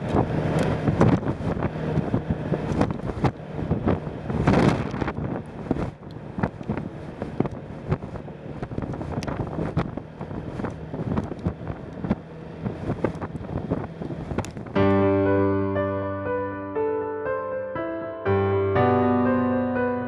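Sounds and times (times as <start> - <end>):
wind buffeting microphone: 0.0 - 14.8
low steady rumble: 0.0 - 16.4.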